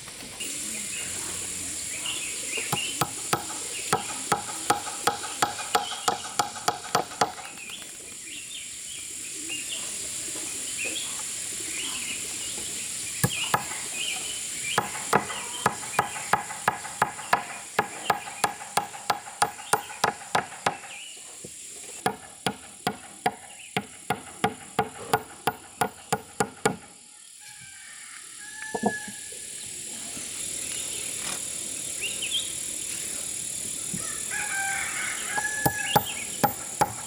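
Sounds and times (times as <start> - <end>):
insects chirring: 0.3 - 37.0
hammer driving nails into wood: 2.7 - 7.6, 13.2 - 13.8, 14.8 - 21.0, 22.0 - 26.9, 35.4 - 37.0.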